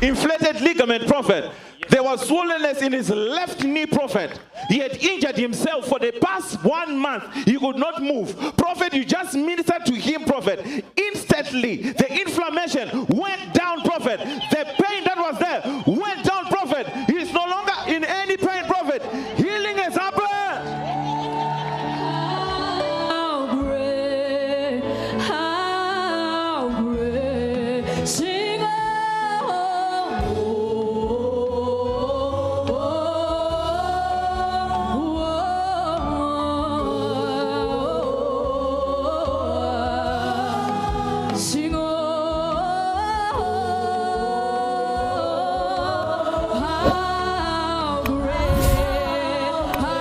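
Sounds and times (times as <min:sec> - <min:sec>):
gospel singing: 0:11.4 - 0:50.0.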